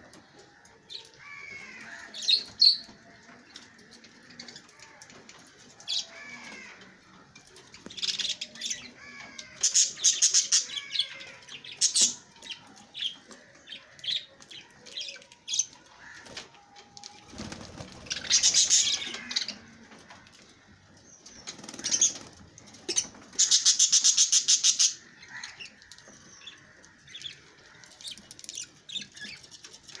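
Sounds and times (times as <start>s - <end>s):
lovebirds chirping and squawking: 0.0s - 30.0s
fluttering wingbeats: 17.2s - 18.9s.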